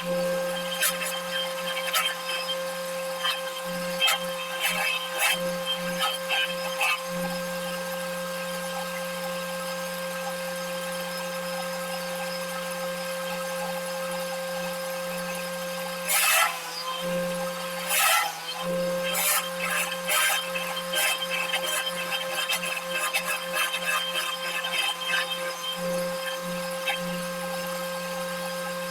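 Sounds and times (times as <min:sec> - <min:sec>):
cutter rasping into wood: 0:00.0 - 0:07.5, 0:16.0 - 0:27.8
electric motor humming: 0:00.0 - 0:08.6, 0:15.1 - 0:28.9.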